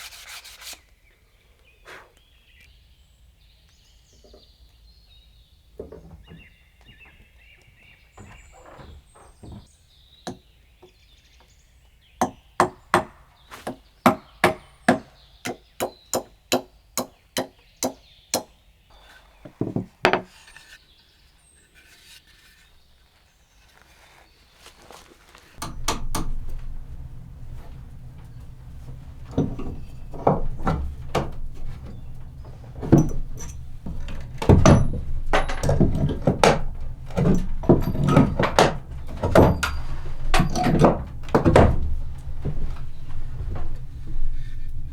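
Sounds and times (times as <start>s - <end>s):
irregular knocks and thuds: 8.2s - 9.7s, 25.6s - 44.9s
hammer blows on wood: 25.6s - 44.9s
low steady rumble: 25.6s - 44.9s.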